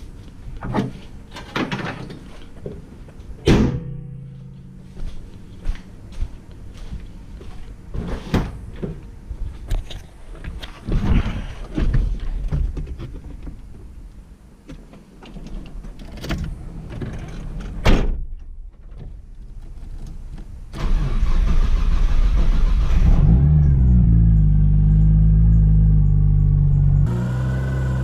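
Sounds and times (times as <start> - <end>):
car engine idling: 23.7 - 28.0.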